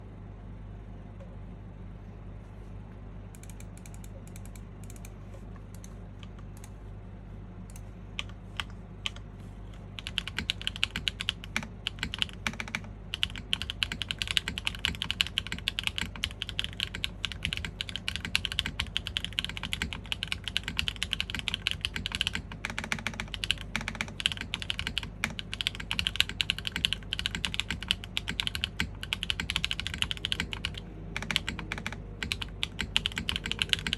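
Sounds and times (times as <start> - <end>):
typing on mechanical keyboard: 7.7 - 9.3, 10.0 - 33.9.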